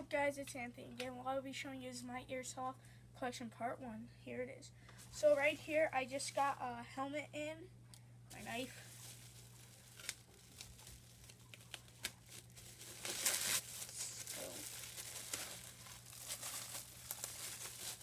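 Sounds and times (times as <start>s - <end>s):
packaging crinkling and rustling: 5.0s - 6.6s, 8.3s - 18.0s.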